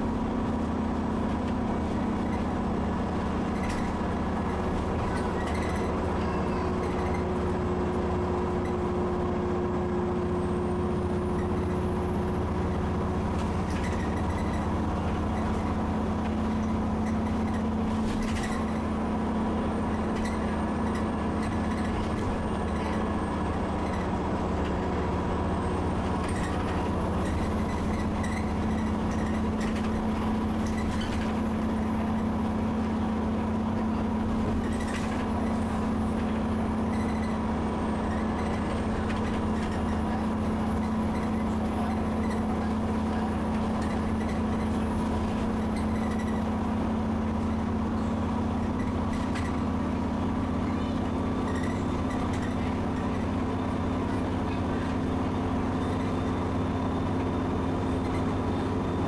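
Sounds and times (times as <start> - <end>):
bus body rattles: 0.0 - 59.0
bus diesel engine droning: 0.0 - 59.0.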